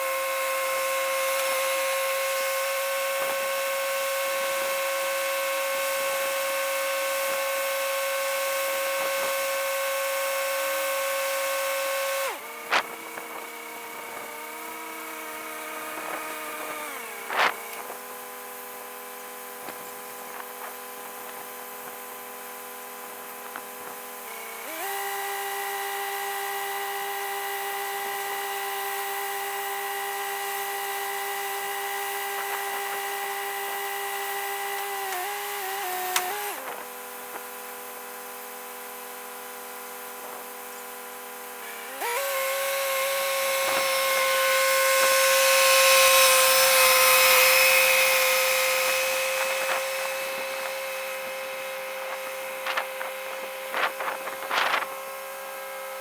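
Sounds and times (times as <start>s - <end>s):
tractor engine running: 41.4s - 55.0s.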